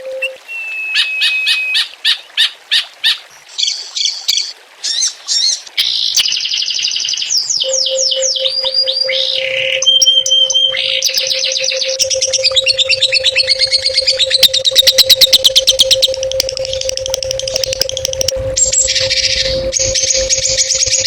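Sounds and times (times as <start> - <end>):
songbird singing: 0.0 - 21.0
steady low tone: 7.6 - 21.0.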